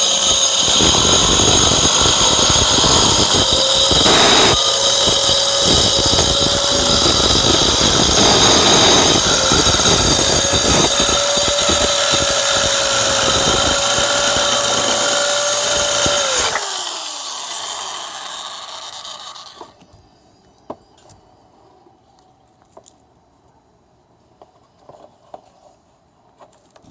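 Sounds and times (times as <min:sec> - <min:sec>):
circular saw motor whine: 0:00.2 - 0:19.8.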